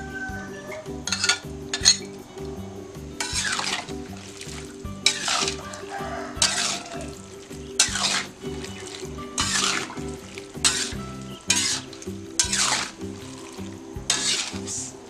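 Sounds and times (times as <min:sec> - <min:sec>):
background music with beat: 0:00.0 - 0:15.0
stirring scraping sweeps: 0:01.0 - 0:15.0
food sizzling in a pan: 0:03.2 - 0:15.0.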